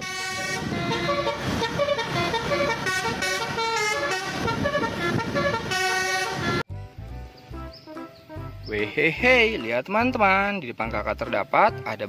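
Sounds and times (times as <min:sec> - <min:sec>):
musical vehicle horn playing tune: 0:00.0 - 0:09.6.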